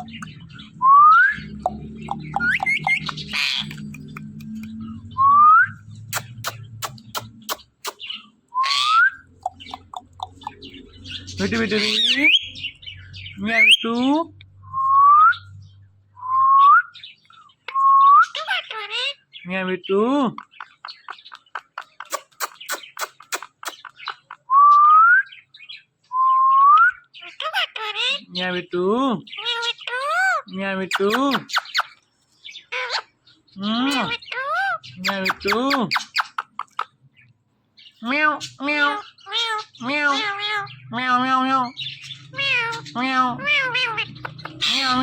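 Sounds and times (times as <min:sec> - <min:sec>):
parrot chattering: 0:01.6 - 0:04.8, 0:06.1 - 0:12.6, 0:20.4 - 0:24.5, 0:27.2 - 0:28.3, 0:29.3 - 0:32.0, 0:32.7 - 0:33.2, 0:33.8 - 0:37.0, 0:38.1 - 0:45.0
parrot whistling: 0:02.1 - 0:03.8
sharp clicks: 0:02.1 - 0:04.8, 0:06.1 - 0:08.1.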